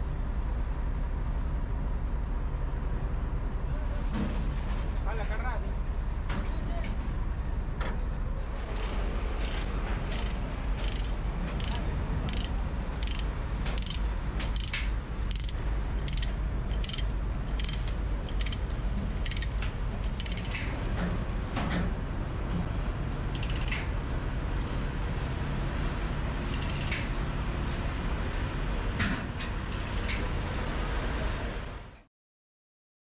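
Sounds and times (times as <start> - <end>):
steady low rumble: 0.0 - 3.8
machinery metallic clicks and knocks: 8.8 - 21.9, 23.3 - 23.9, 26.4 - 28.4, 29.0 - 30.6.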